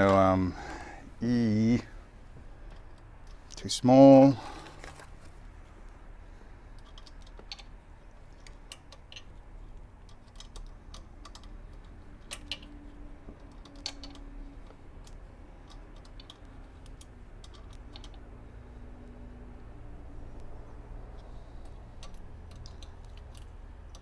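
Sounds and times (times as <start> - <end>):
low steady hum: 0.0 - 24.0
light clicks and taps: 19.6 - 24.0.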